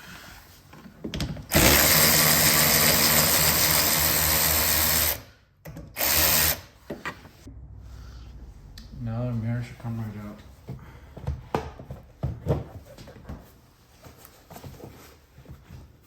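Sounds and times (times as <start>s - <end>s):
power drill spinning: 1.5s - 5.3s, 5.9s - 6.8s.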